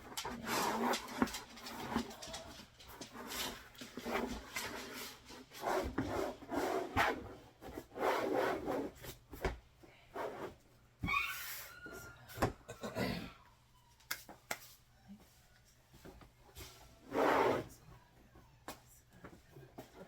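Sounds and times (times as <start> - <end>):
cutting mat rubbing on tabletop: 3.2 - 9.1, 17.0 - 17.7.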